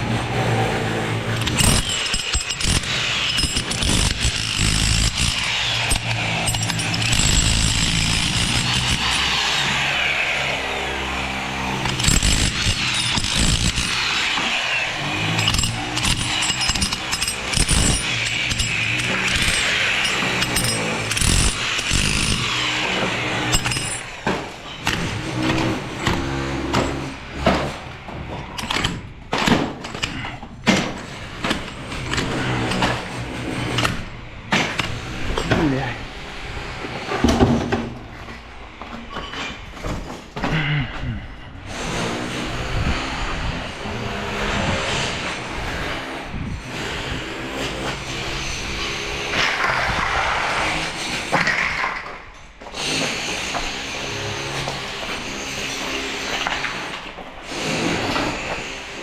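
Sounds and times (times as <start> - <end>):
power tool whining: 0.0 - 29.0
construction knocks and clatters: 0.0 - 59.0.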